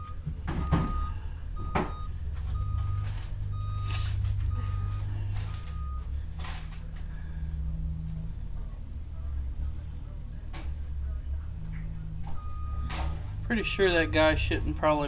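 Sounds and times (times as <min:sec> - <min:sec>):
backup alarm beeping: 0:00.0 - 0:08.4, 0:11.4 - 0:15.0
low engine rumble: 0:00.0 - 0:15.0.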